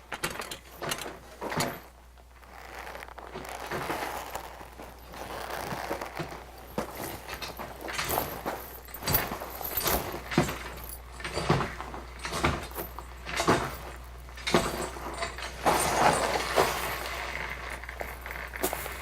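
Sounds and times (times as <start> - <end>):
rustling and scraping: 0.2 - 19.0
knocks and clatters: 4.8 - 19.0.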